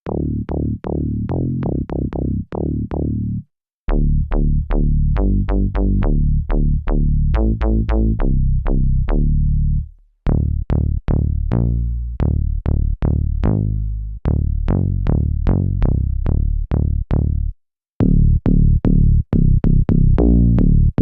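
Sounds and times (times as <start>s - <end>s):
synthesizer plucked bass notes: 0.0s - 21.0s.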